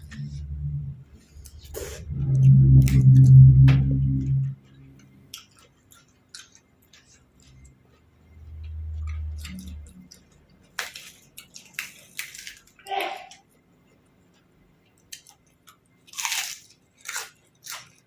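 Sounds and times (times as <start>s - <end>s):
low murmur: 0.0s - 5.2s
wet chewing: 4.6s - 12.8s
crisp crunching bites: 9.0s - 12.8s, 15.1s - 18.0s.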